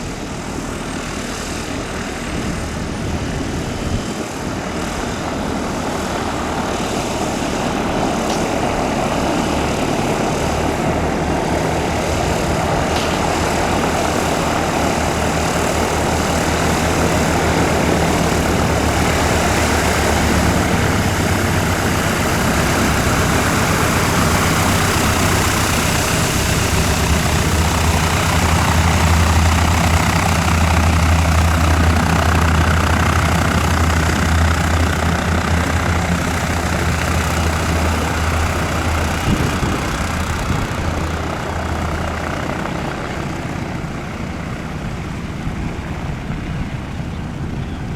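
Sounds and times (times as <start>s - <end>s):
light aircraft engine and propeller: 0.0s - 47.9s.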